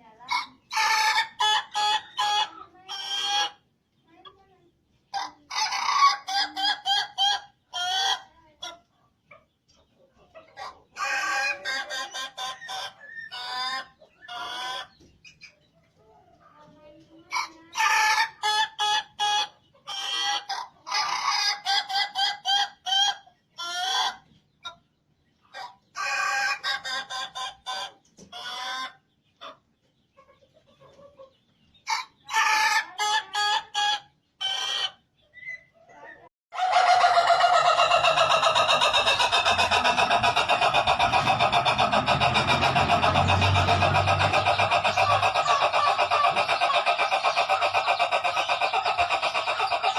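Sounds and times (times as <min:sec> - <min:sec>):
rooster crowing: 0:36.5 - 0:46.5.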